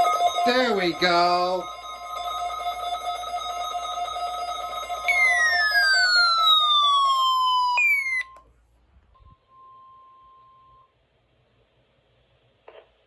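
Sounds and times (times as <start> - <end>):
steady high tone: 0.0 - 8.4
weather radio alarm siren tone: 0.0 - 8.4
faint steady tone: 0.0 - 8.5, 9.1 - 11.0.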